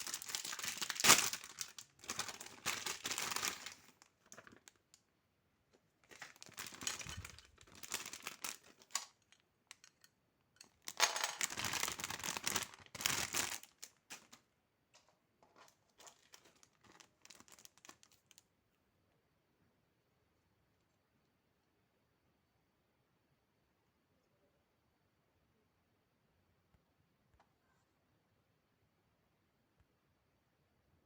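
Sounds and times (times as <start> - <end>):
wrapping crinkling and rustling: 0.0 - 5.0, 5.7 - 18.5.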